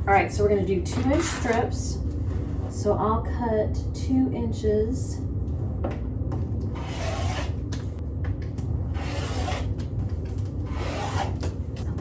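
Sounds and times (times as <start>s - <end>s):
steady low hum: 0.0s - 12.0s
rotary cutter slicing fabric: 6.8s - 7.6s, 9.0s - 9.7s, 10.7s - 11.4s.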